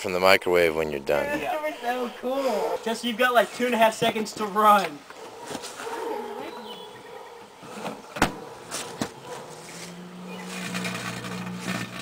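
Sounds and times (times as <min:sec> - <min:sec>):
microwave oven humming: 0:10.2 - 0:12.0.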